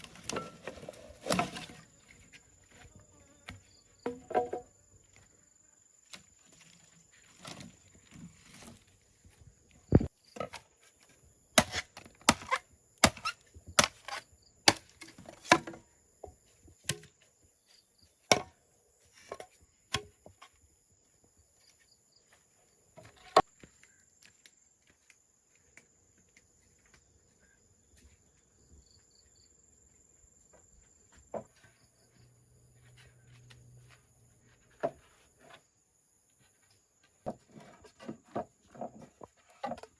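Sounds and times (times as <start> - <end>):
hand tool striking wood: 4.0 - 4.7, 11.6 - 15.8, 18.3 - 18.5.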